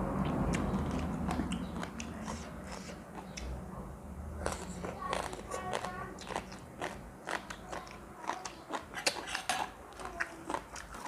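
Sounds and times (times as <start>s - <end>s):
wet mouth clicks: 0.2s - 3.5s
person chewing food: 0.2s - 3.6s, 4.4s - 11.0s.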